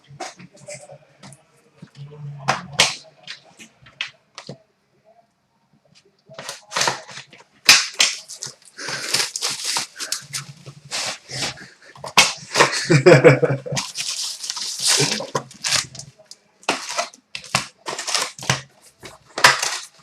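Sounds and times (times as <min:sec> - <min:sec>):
foil packs crinkling and ripping: 0:06.4 - 0:11.6, 0:13.7 - 0:20.0.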